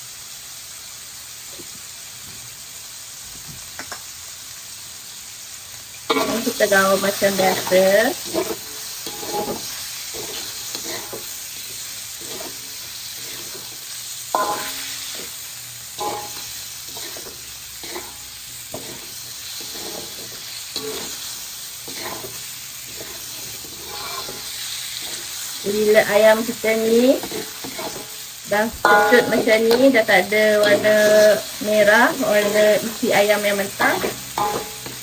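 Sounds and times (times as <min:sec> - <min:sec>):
chicken sizzling in hot oil: 0:00.0 - 0:35.0
utensil scraping and knocking pan: 0:07.4 - 0:11.3, 0:16.0 - 0:21.2, 0:21.9 - 0:25.3, 0:27.2 - 0:28.2, 0:33.9 - 0:35.0.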